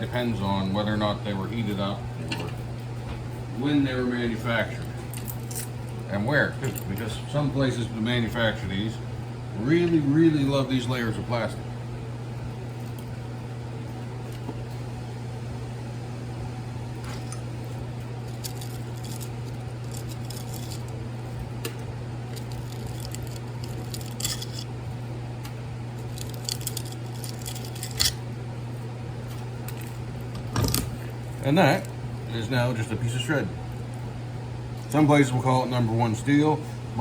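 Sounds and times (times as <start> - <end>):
steady low hum: 0.0 - 37.0
wire and insulation clicking and crinkling: 4.8 - 6.0, 17.0 - 24.7, 25.4 - 28.3.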